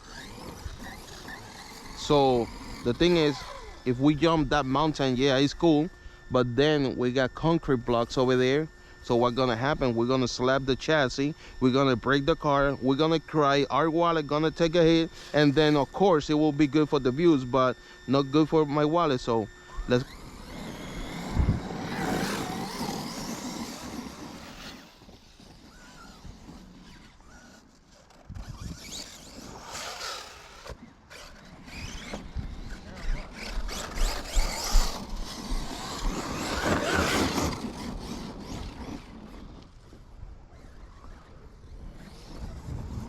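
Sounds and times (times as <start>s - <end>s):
tyres scrabbling on dirt: 0.0s - 3.8s, 20.0s - 39.8s
rc car motor whine: 0.0s - 43.0s.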